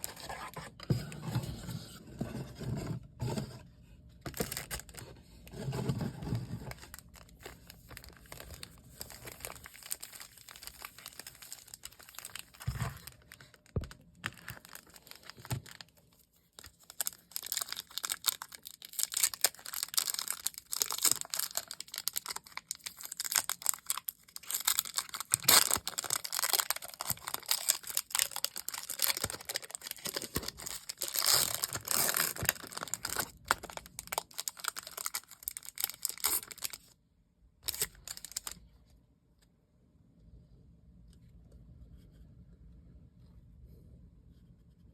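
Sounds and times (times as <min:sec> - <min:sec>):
packaging torn and crinkled: 0:04.3 - 0:05.0, 0:06.5 - 0:36.9, 0:37.6 - 0:38.6.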